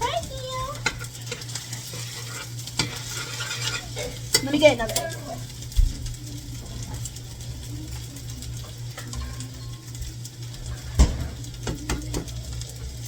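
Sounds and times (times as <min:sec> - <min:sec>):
rice sizzling in a frying pan: 0:00.0 - 0:13.0
steady low hum: 0:00.0 - 0:13.0
kitchen utensils clicking: 0:00.7 - 0:05.5.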